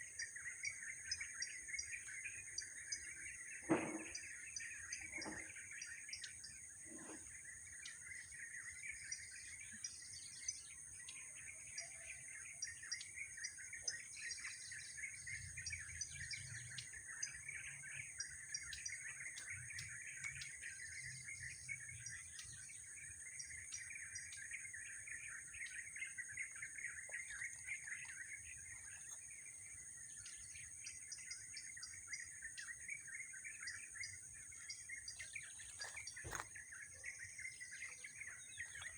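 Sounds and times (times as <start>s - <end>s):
small birds chirping: 0.0s - 38.9s.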